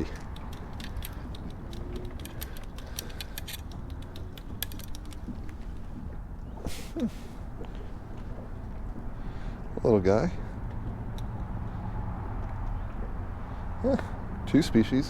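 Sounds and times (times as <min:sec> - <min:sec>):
fishing gear clicks and rattles: 0:00.0 - 0:06.1.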